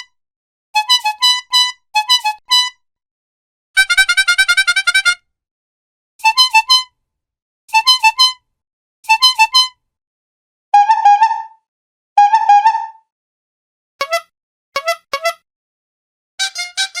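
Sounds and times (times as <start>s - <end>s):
clown bulb horn honking: 16.4s - 17.0s.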